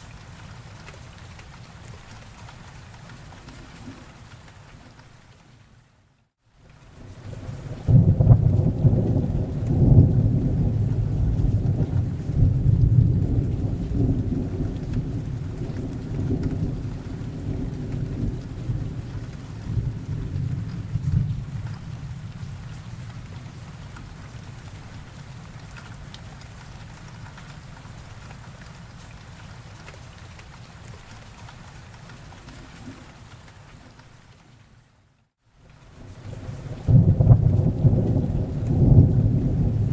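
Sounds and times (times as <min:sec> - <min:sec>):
steady rain: 0:00.0 - 0:39.9
rolling thunder: 0:07.3 - 0:23.4, 0:36.3 - 0:39.9.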